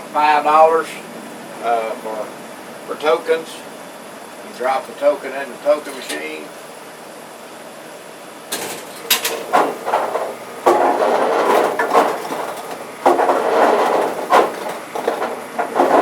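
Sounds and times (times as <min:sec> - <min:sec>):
dispenser mechanism clacking: 0:08.5 - 0:16.0
golf balls rattling out: 0:08.8 - 0:16.0.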